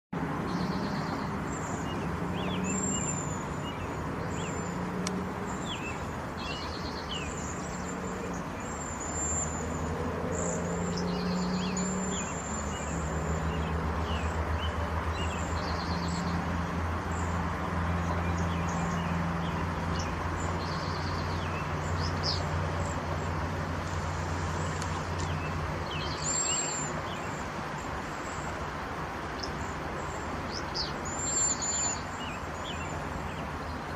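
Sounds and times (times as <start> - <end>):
birds calling with high whistles: 0.4 - 33.9
bird chirps: 0.5 - 4.8, 24.6 - 28.5, 29.4 - 33.9.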